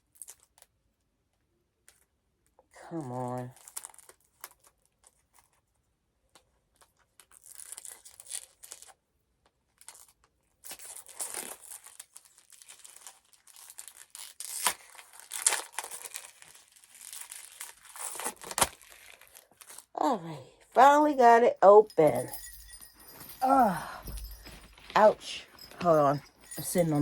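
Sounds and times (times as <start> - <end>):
packaging rustling and tearing: 7.2 - 9.0, 10.7 - 19.9.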